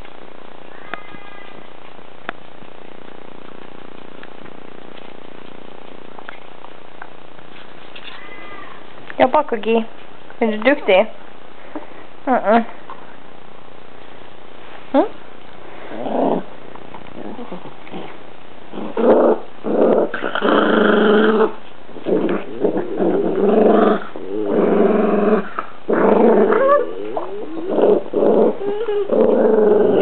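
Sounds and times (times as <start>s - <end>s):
dog growling: 15.8s - 30.0s.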